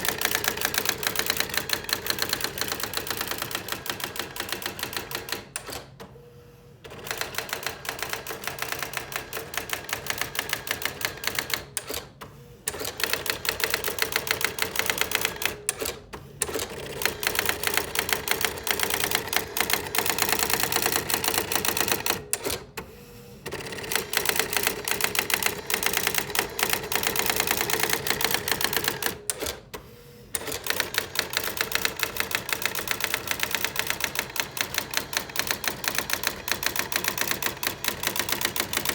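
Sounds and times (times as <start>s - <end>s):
electronic typewriter typing strikes: 23.5s - 29.6s, 30.4s - 38.9s.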